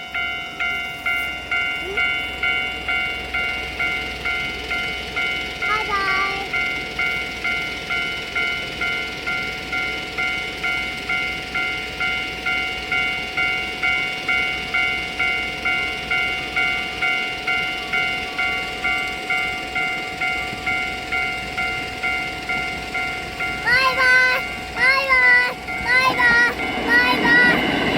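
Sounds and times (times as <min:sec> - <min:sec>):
level-crossing electronic bell ringing: 0:00.0 - 0:27.9.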